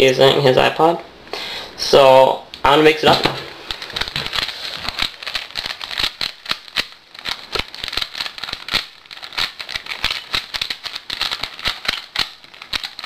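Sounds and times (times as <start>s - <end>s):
puzzle cube clicking and rattling: 3.7s - 13.0s.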